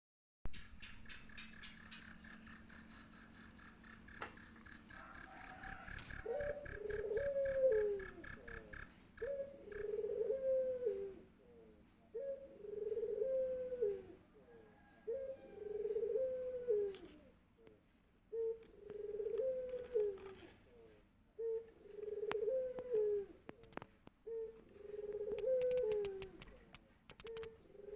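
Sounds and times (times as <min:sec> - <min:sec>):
cricket chirping: 0:00.5 - 0:27.9
bird cooing: 0:05.3 - 0:08.5, 0:09.2 - 0:17.3, 0:18.3 - 0:27.9.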